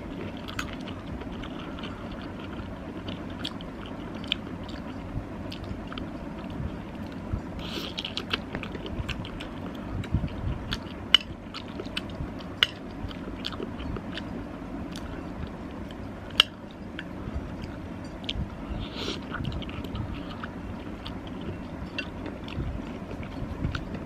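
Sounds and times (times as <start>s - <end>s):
person chewing: 0.0s - 24.0s.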